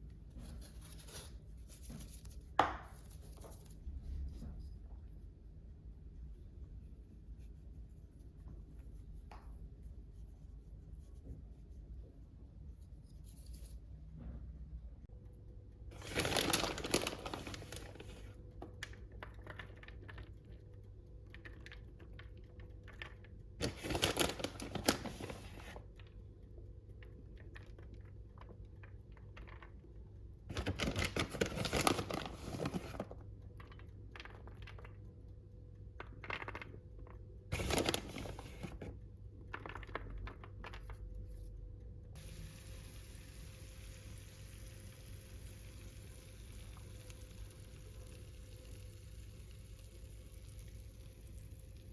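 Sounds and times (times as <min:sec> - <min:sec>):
low steady hum: 0:00.0 - 0:51.9
food packaging rustling and crinkling: 0:16.0 - 0:20.3, 0:22.9 - 0:25.9, 0:30.5 - 0:34.9, 0:36.2 - 0:41.1.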